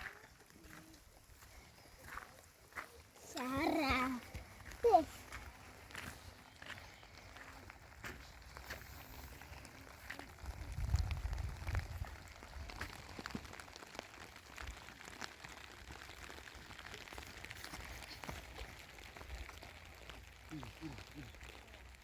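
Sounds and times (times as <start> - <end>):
rain drops ticking: 0.0 - 22.0.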